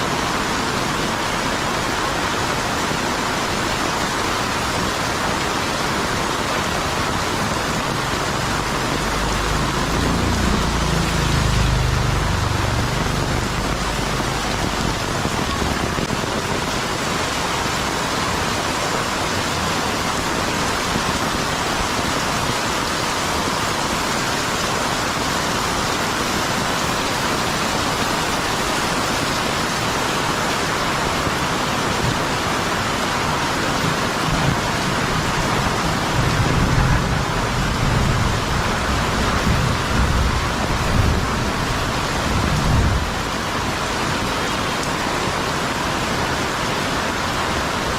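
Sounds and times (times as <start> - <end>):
heavy rain pouring: 0.0 - 47.9
low rumble: 7.9 - 16.2.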